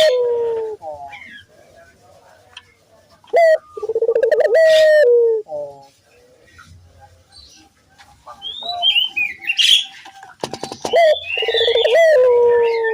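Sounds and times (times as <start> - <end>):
dove cooing: 0.0 - 1.4, 3.3 - 5.9, 10.6 - 12.9.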